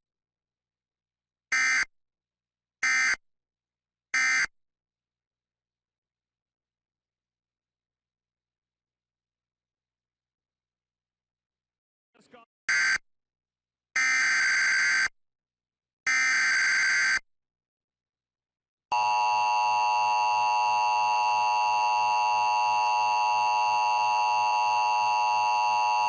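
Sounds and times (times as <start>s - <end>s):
two-tone attention signal: 18.9s - 26.0s.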